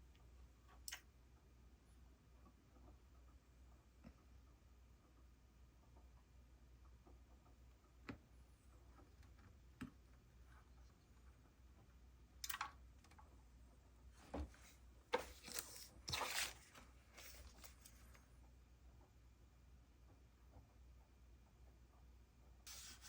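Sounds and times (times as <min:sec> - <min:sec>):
rough handling noises: 0:14.2 - 0:18.2.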